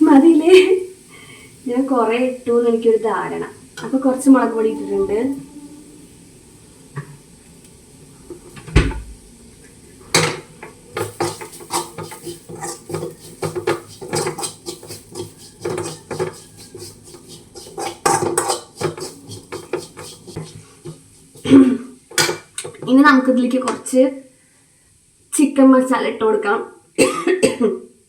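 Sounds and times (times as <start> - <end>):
metal spoon scraping a pan: 10.2 - 22.9.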